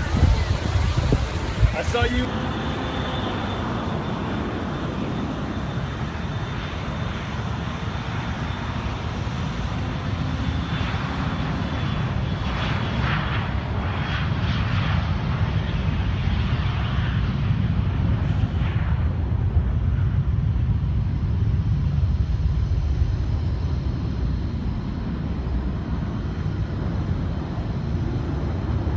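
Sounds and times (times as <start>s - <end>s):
jet engines running: 0.0s - 28.9s.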